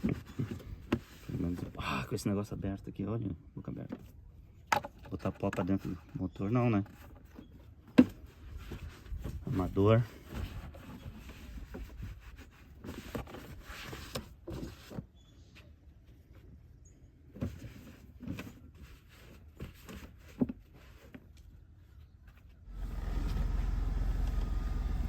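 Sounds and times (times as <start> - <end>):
handling knocks and rustles: 3.7 - 16.6, 17.3 - 21.6.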